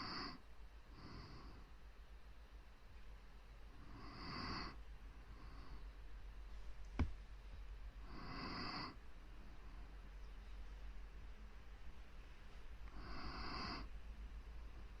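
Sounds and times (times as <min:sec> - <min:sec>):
close breathing: 0:00.0 - 0:01.8, 0:03.8 - 0:06.0, 0:08.0 - 0:09.9, 0:12.5 - 0:15.0.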